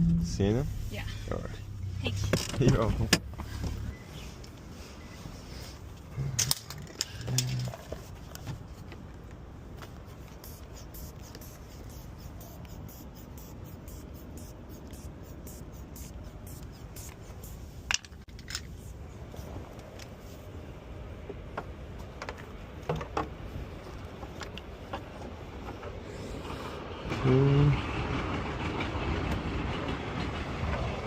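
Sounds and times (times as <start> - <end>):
steady low rumble: 0.0 - 4.9, 9.4 - 21.2.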